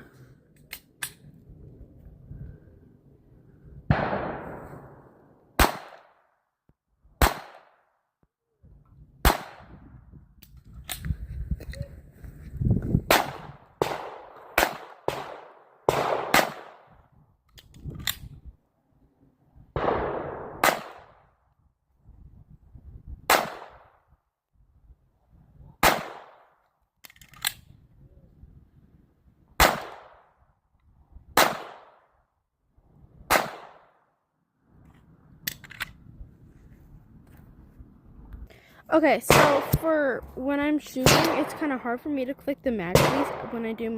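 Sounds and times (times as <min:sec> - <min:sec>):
gunshots with echo: 0:03.9 - 0:06.2, 0:13.1 - 0:16.9, 0:19.8 - 0:21.2, 0:39.3 - 0:39.8, 0:41.0 - 0:41.8, 0:42.9 - 0:43.8.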